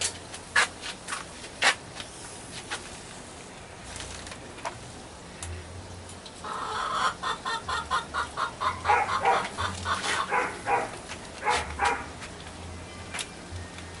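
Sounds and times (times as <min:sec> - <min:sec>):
chickens clucking: 0:06.4 - 0:11.0.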